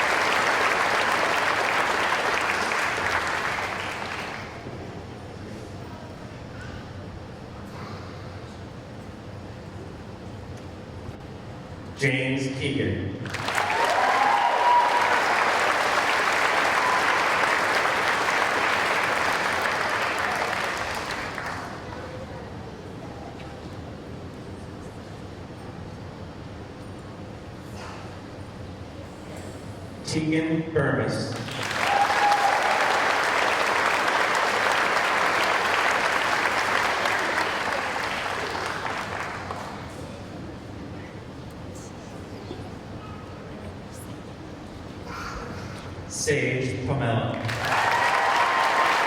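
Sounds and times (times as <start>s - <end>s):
audience clapping: 0.0s - 4.8s, 13.3s - 22.0s, 31.3s - 40.2s, 47.4s - 49.0s
crowd applause: 0.0s - 4.8s, 13.3s - 22.3s, 31.4s - 40.3s, 47.4s - 49.0s.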